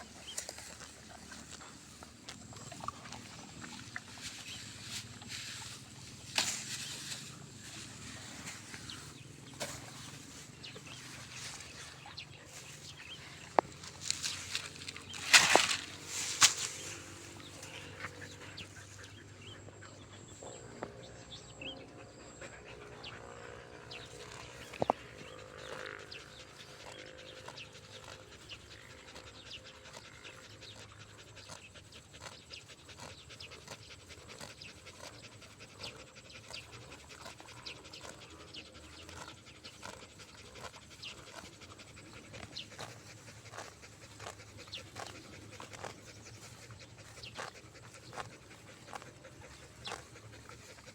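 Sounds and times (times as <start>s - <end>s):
dog panting: 17.0s - 50.9s.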